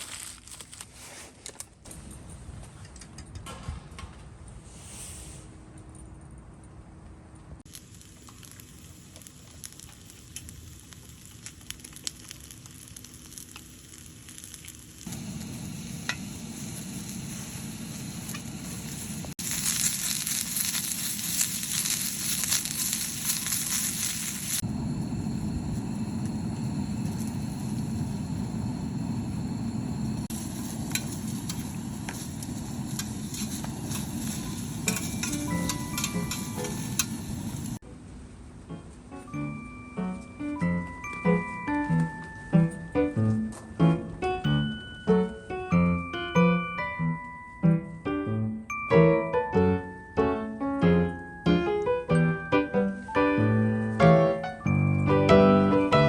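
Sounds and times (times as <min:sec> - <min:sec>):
food sizzling in a hot pan: 0:07.7 - 0:24.7, 0:30.2 - 0:37.8.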